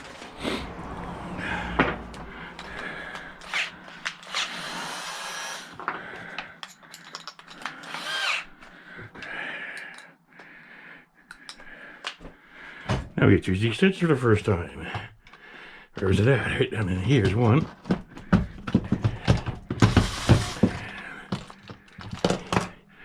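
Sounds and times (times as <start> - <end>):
power drill running: 3.4 - 5.8, 7.7 - 8.5, 19.8 - 21.0
handling clicks and knocks: 5.8 - 7.9, 17.1 - 22.8.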